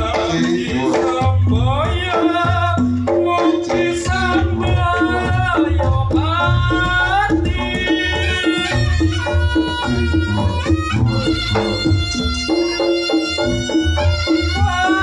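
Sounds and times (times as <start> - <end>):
drums beating a rhythm: 0.0 - 15.0
gliding melody line: 6.5 - 15.0.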